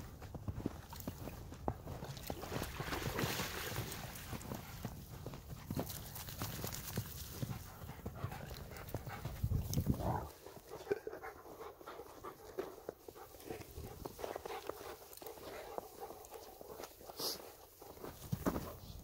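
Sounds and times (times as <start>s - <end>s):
dog panting: 6.6s - 18.2s.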